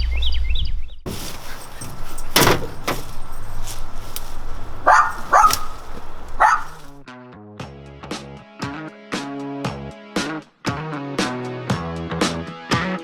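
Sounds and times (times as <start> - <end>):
outdoor background noise: 0.0 - 7.0
dog barking: 1.4 - 7.0.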